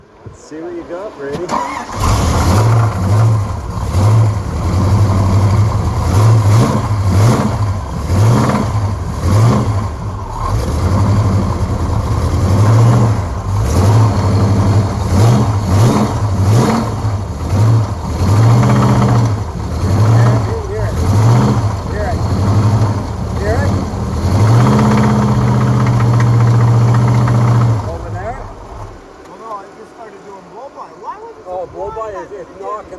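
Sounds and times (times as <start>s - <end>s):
engine revving with rod knock: 1.3s - 29.2s.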